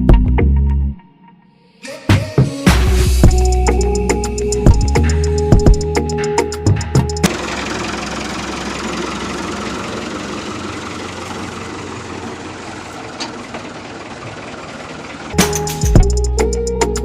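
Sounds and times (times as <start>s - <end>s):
small motor rattling: 7.3s - 16.4s.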